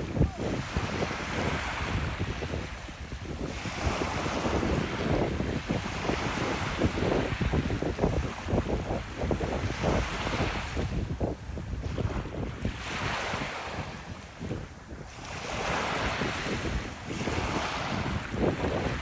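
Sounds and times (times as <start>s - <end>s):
sea waves washing up beach: 0.0s - 19.0s
wind buffeting microphone: 0.0s - 19.0s.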